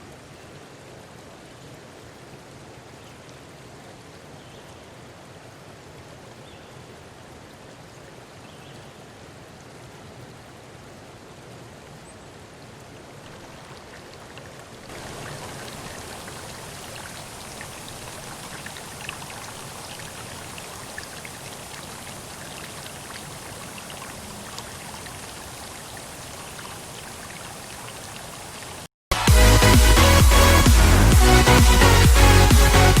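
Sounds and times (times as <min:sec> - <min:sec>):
river water rushing: 0:12.6 - 0:28.9
water dripping and splashing: 0:12.6 - 0:28.9.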